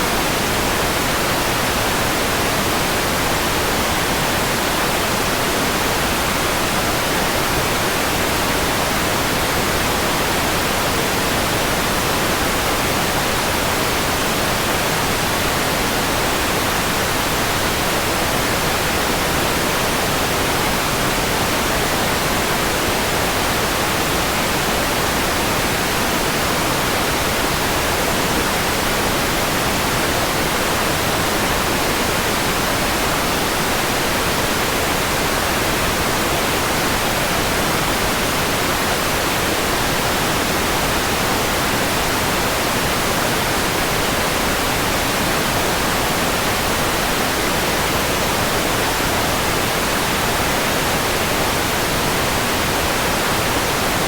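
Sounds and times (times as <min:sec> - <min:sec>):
white noise hiss: 0:00.0 - 0:54.0.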